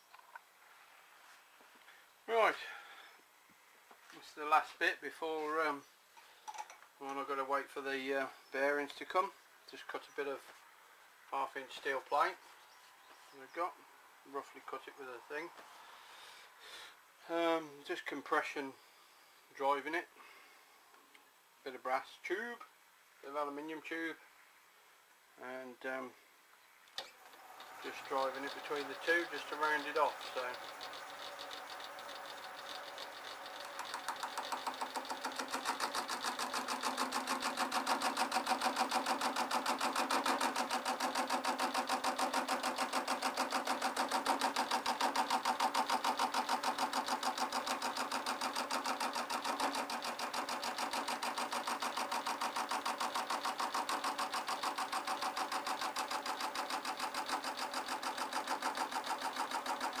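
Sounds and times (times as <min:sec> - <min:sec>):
metal lathe cutting steel: 0:27.6 - 1:00.0.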